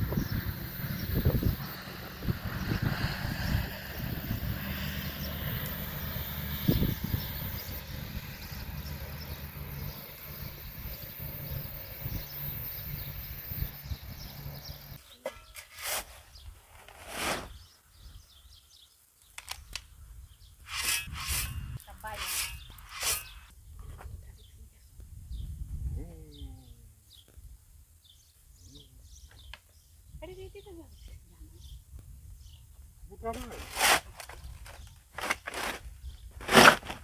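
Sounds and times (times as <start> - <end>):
short rustles or knocks: 36.4 - 37.0.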